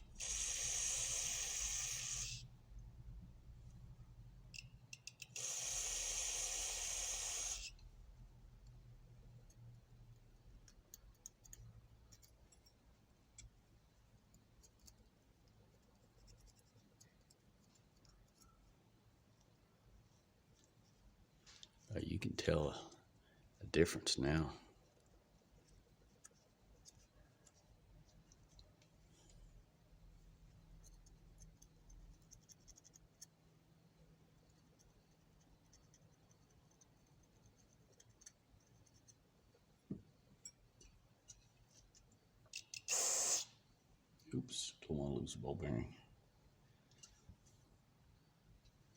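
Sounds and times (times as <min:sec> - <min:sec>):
low steady hum: 0:01.4 - 0:04.9
small metal parts clicking: 0:04.5 - 0:05.5, 0:42.5 - 0:43.0.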